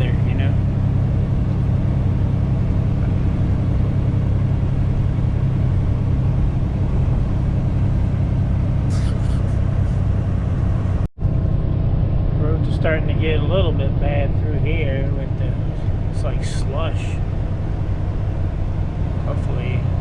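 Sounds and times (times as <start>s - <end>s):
tyres on wet road: 0.0s - 11.1s, 12.5s - 20.0s
diesel truck engine drone: 0.0s - 20.0s.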